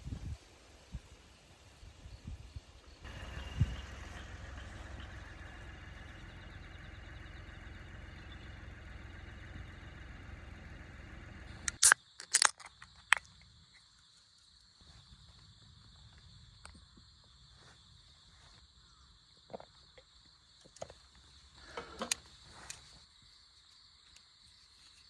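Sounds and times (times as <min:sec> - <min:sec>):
low engine-like rumble: 0:03.0 - 0:11.8.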